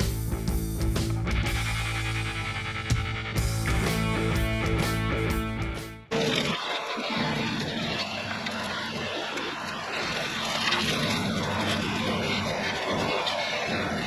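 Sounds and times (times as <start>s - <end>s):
diesel engine drone: 0.0s - 6.1s.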